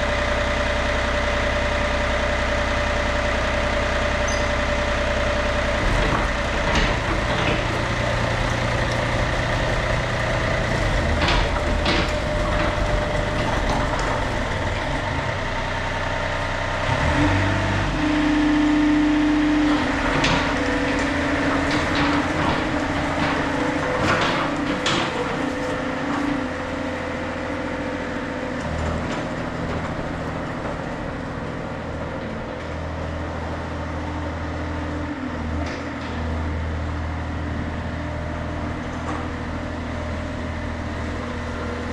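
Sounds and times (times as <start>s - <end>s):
excavator diesel engine running: 0.0s - 41.9s
knocks and clanks: 5.6s - 15.6s, 19.6s - 33.6s.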